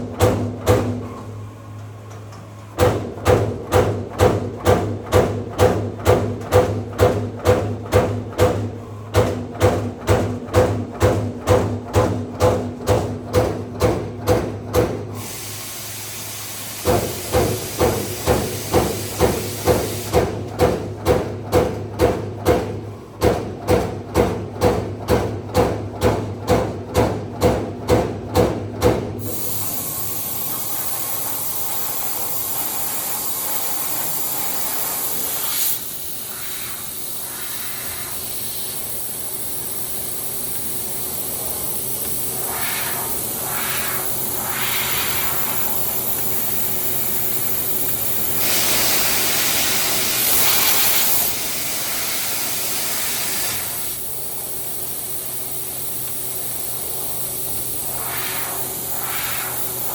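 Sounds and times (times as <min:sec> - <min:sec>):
steady machine hiss: 0:15.0 - 0:20.5, 0:29.2 - 0:59.9.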